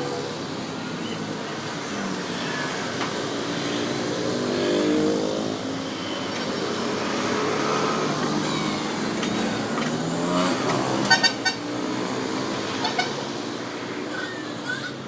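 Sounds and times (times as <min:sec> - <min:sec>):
diesel engine revving: 0:03.4 - 0:13.8.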